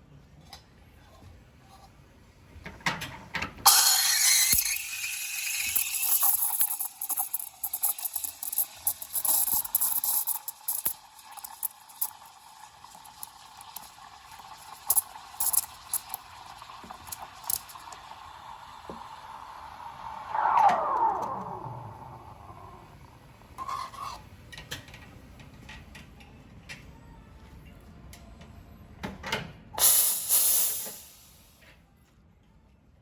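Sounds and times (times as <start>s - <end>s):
steam wand hissing: 29.8s - 31.5s.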